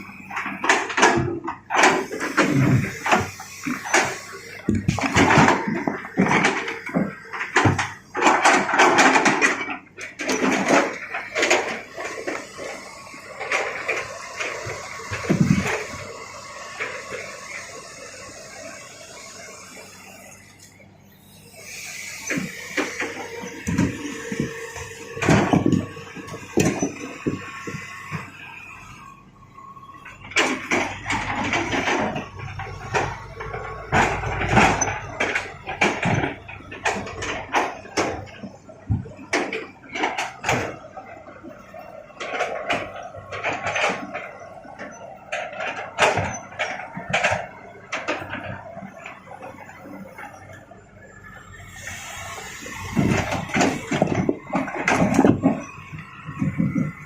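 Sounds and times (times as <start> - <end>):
rocks knocking and clunking: 0.3 - 16.2, 22.4 - 28.4, 52.9 - 57.0.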